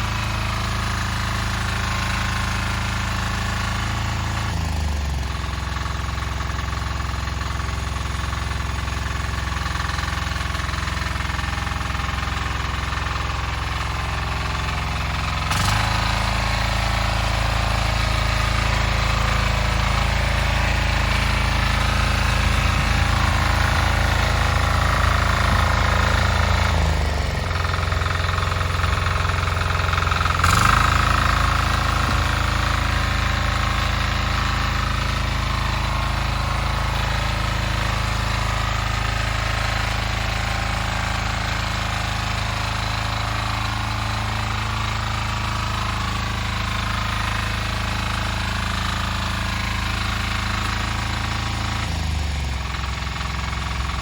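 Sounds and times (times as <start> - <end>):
diesel engine clattering: 0.0 - 54.0.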